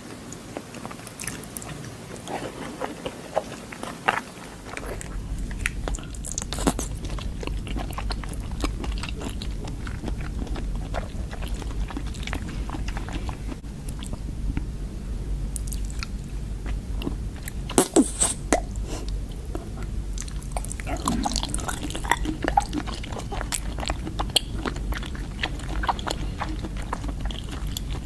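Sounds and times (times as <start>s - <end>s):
biting and chewing crunches: 0.0s - 14.3s, 15.5s - 28.0s
steady low hum: 0.0s - 28.0s
wet mouth clicks: 17.4s - 19.2s.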